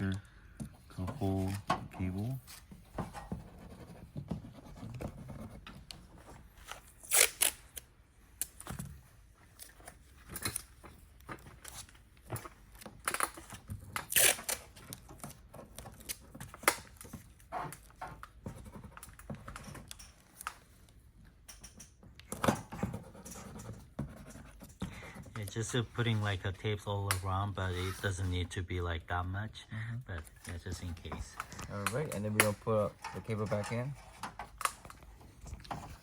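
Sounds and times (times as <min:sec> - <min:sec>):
rustling and handling noises: 0:00.0 - 0:29.4, 0:30.0 - 0:36.0
adhesive tape ripping: 0:07.0 - 0:07.8, 0:14.0 - 0:14.7.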